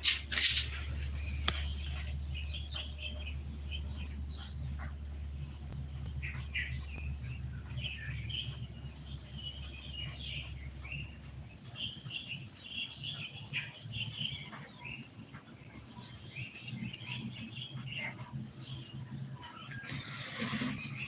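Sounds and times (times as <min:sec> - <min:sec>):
birds chirping: 0:00.0 - 0:04.5
insect trilling: 0:19.6 - 0:21.0.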